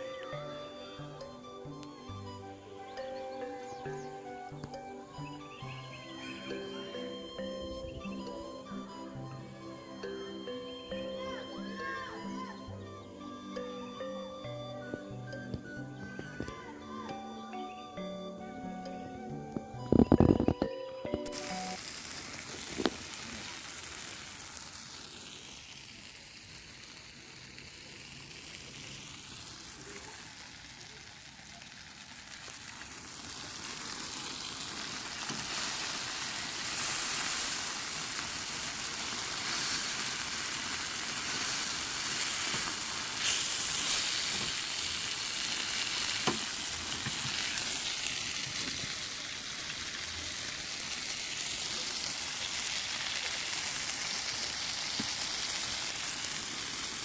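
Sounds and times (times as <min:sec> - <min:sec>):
food sizzling in a frying pan: 0:21.2 - 0:57.0.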